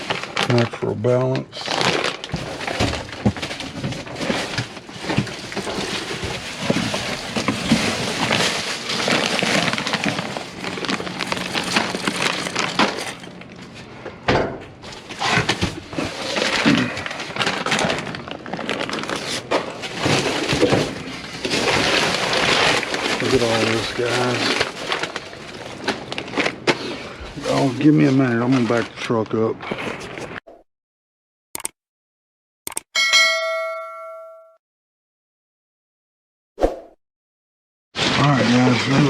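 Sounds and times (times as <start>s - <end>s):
plastic bags rustling and crinkling: 0.0s - 13.9s, 14.8s - 30.4s, 38.0s - 39.0s.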